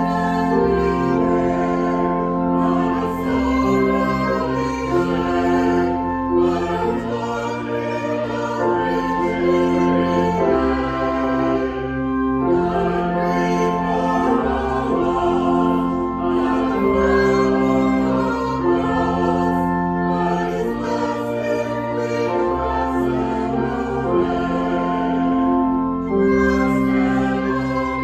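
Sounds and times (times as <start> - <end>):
choir singing a hymn: 0.0 - 28.0.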